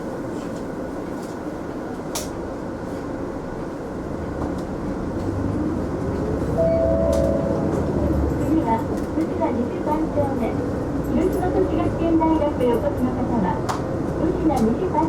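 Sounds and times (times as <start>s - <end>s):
bus engine and road noise: 0.0s - 15.0s
rising whine: 6.6s - 8.5s
short steady tone: 6.6s - 8.5s.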